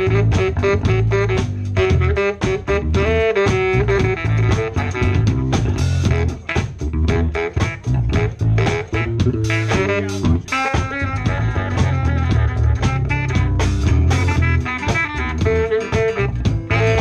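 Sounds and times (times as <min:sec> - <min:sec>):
drum kit beat: 0:00.0 - 0:17.0
heavy bass line: 0:00.0 - 0:17.0.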